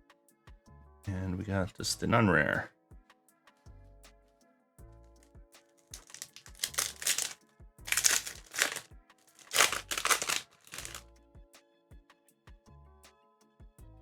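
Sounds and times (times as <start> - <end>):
soft background music: 0.0 - 14.0
foil wrapper crinkling: 5.9 - 11.0.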